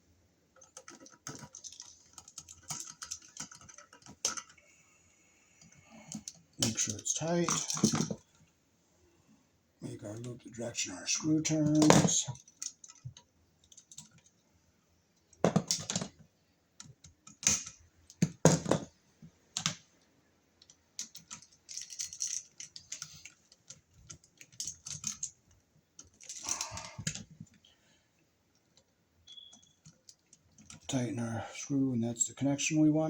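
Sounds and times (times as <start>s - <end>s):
hand tools clicking and scraping: 5.6s - 8.2s, 26.0s - 27.4s.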